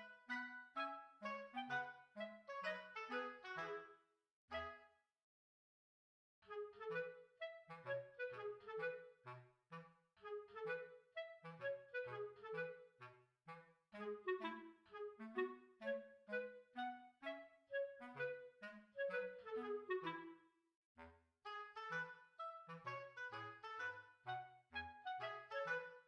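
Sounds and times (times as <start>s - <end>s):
woodwind melody in bouncy notes: 0.0s - 5.0s, 6.4s - 26.0s.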